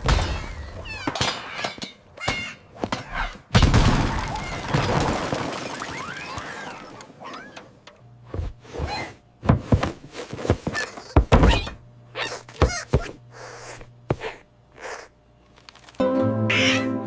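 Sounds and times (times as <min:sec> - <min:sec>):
cartoon thumps and knocks: 0:10.5 - 0:13.2.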